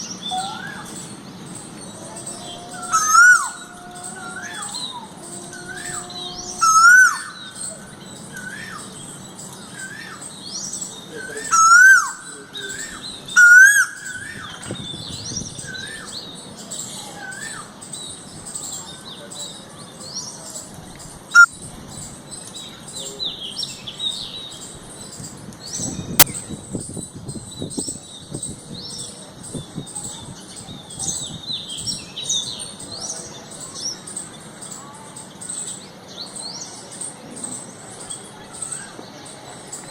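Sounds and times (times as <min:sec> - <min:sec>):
high sweeping bird calls: 0:00.0 - 0:39.9
bird rising-and-falling call: 0:01.9 - 0:07.8, 0:11.4 - 0:14.6.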